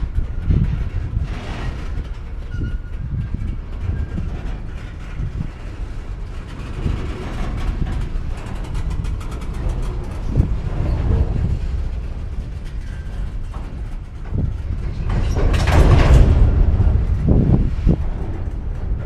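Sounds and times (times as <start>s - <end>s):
train cars rumbling on track: 0.0s - 19.0s
metal crashing and creaking: 6.5s - 19.0s.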